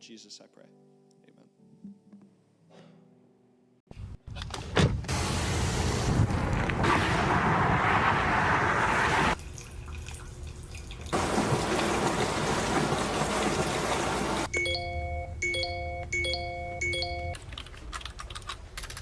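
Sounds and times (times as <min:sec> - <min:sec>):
rushing noise like water: 0:11.2 - 0:14.5.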